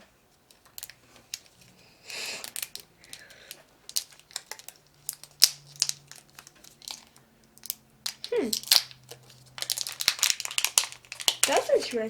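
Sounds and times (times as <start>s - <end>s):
plastic crinkling: 0.4s - 12.0s
packaging tearing: 0.5s - 12.0s
sharp plastic clicks: 2.4s - 11.8s.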